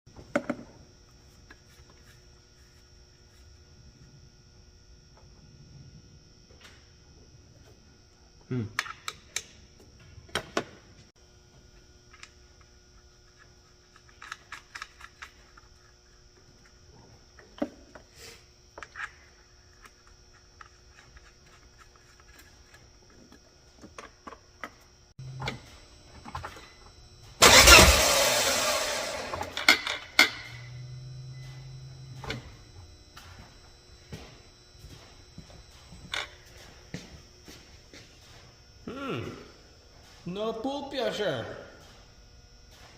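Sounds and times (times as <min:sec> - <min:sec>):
low hum: 0:25.2 - 0:40.2
car engine cranking: 0:27.4 - 0:32.7.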